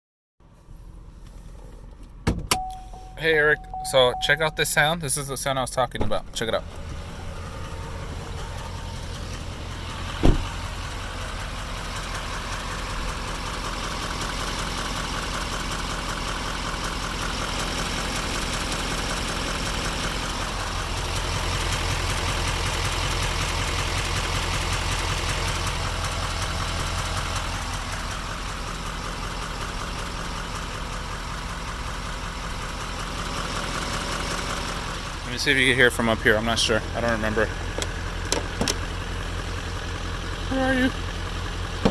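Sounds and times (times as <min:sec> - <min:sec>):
diesel engine idling with knocking: 0:01.0 - 0:41.9
sharp thump: 0:10.1 - 0:10.6.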